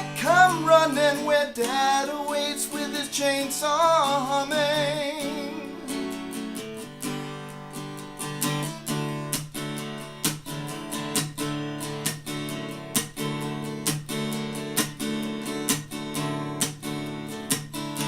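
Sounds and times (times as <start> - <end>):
acoustic guitar strumming: 0.0 - 18.0.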